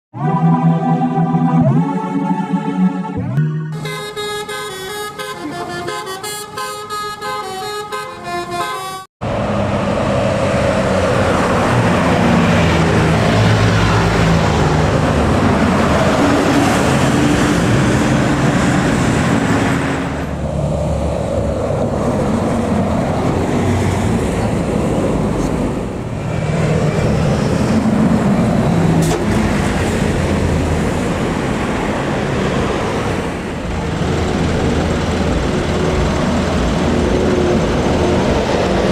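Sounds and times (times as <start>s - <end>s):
intro music: 0.1s - 5.7s
bus diesel engines under load: 0.1s - 38.9s
multi-tone musical horns: 0.2s - 9.1s.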